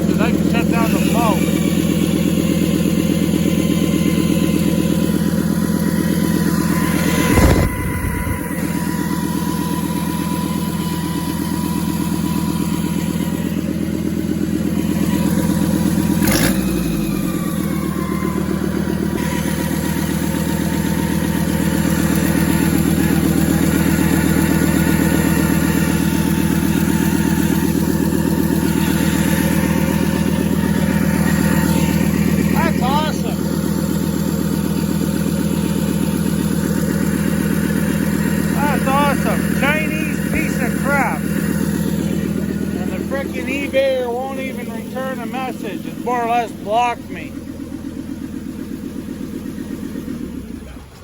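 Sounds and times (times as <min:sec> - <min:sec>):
diesel engine idling: 0:00.0 - 0:51.0.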